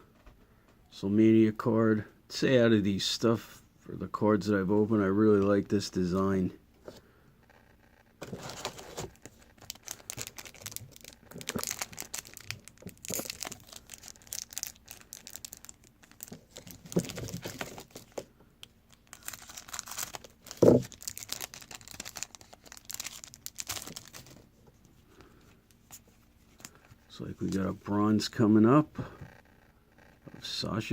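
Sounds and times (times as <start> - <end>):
wrapper crinkling and tearing: 8.2 - 18.2, 18.9 - 24.5.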